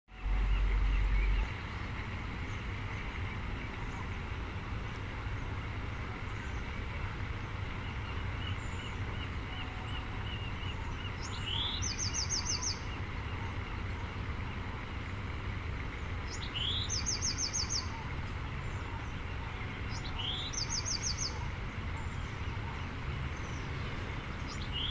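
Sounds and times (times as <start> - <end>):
birds calling faintly: 0.1 - 24.9.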